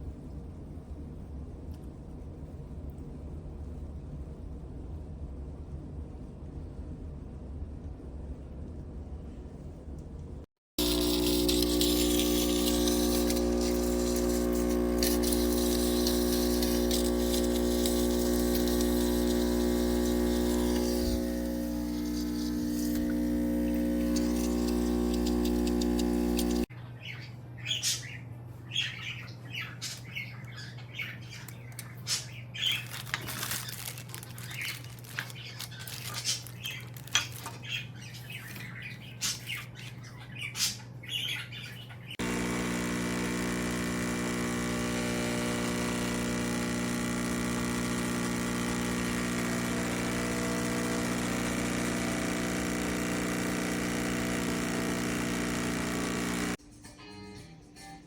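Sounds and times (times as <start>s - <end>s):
electric pump hum: 10.8s - 26.7s, 42.2s - 56.6s
steam hissing and spitting: 10.8s - 26.7s.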